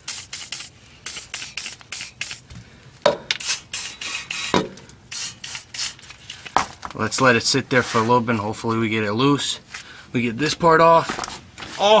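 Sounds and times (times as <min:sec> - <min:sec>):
aerosol spray hissing bursts: 0:00.0 - 0:02.5, 0:03.4 - 0:06.0.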